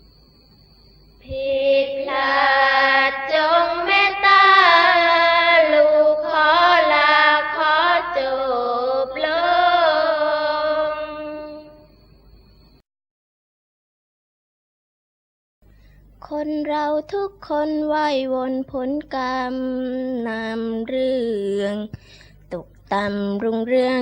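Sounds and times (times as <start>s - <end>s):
woman chanting long wavering notes: 1.3s - 11.9s.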